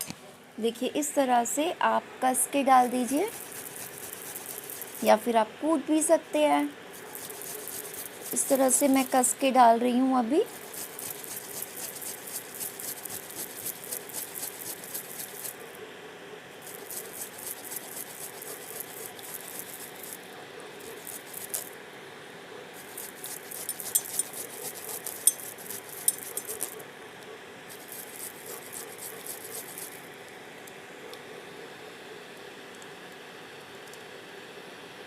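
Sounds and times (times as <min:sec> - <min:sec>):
ginger grated on hand grater: 0:02.6 - 0:05.3, 0:06.9 - 0:09.5, 0:10.4 - 0:15.7, 0:16.6 - 0:20.2, 0:20.8 - 0:21.7, 0:22.8 - 0:26.8, 0:27.7 - 0:30.0.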